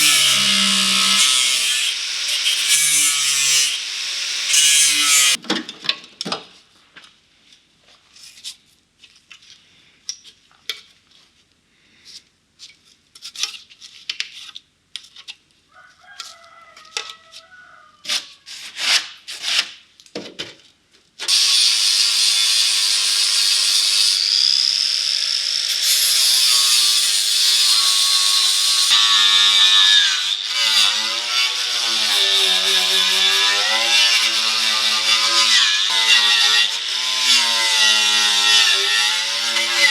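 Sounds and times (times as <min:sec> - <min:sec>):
power tool cutting sheet metal: 0:00.0 - 0:05.4, 0:21.3 - 0:39.9.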